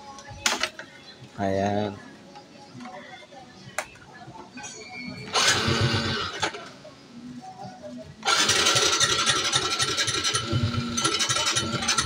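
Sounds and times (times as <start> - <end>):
motorcycle engine cranking: 5.3 - 6.6, 8.2 - 12.0.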